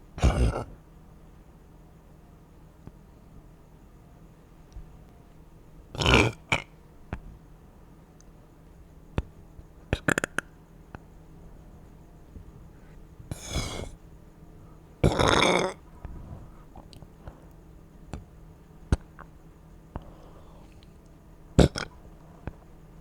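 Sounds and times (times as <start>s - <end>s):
person burping: 0.2s - 0.7s, 6.0s - 6.7s, 15.0s - 15.8s, 21.6s - 22.0s.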